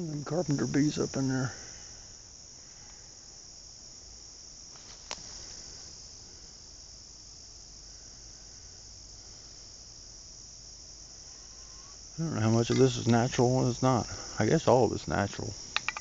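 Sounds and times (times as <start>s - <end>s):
crickets trilling: 0.0s - 16.0s
sharp click: 15.8s - 16.0s.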